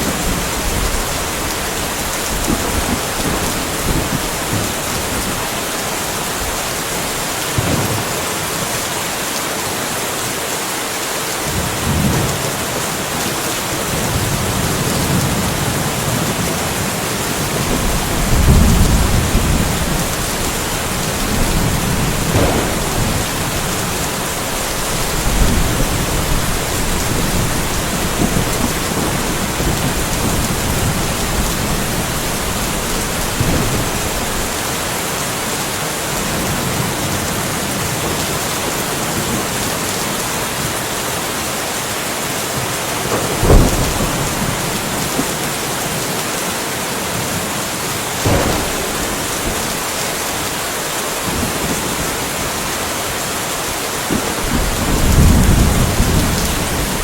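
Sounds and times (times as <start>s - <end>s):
rolling thunder: 0.0s - 8.4s, 13.9s - 34.7s, 43.1s - 45.4s, 48.2s - 52.8s, 54.1s - 57.0s
steady rain: 0.0s - 57.0s.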